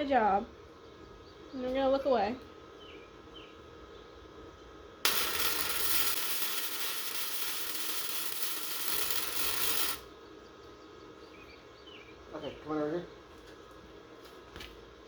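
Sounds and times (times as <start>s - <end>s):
electric welding arc: 5.1s - 10.1s.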